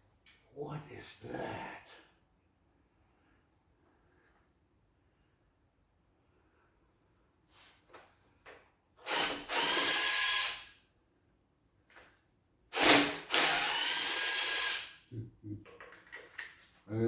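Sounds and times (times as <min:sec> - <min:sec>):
power drill spinning: 0:09.0 - 0:10.7, 0:12.7 - 0:15.0.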